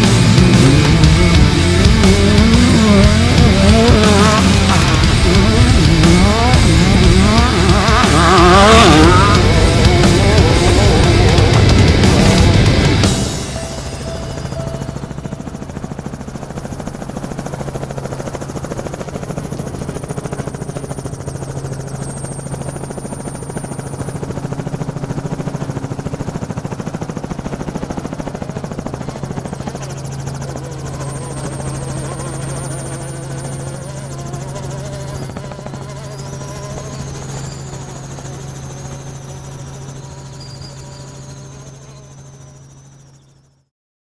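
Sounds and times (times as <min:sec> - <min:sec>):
faint rising and falling tones: 0:00.0 - 0:22.6
engine drone: 0:00.0 - 0:43.7.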